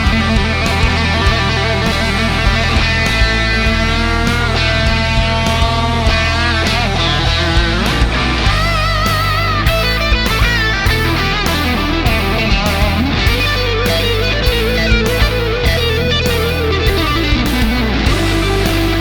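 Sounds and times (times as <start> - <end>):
bass guitar: 0.0 - 19.0
overdriven electric guitar lead: 0.0 - 19.0
steady drum beat: 0.0 - 19.0.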